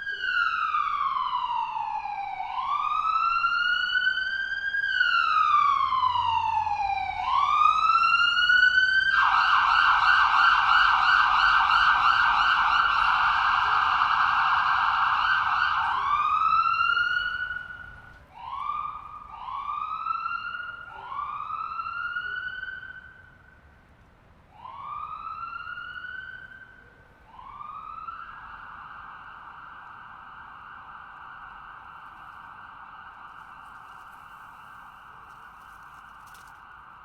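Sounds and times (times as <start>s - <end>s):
siren steady tone and whoops: 0.0s - 23.4s, 24.5s - 37.0s.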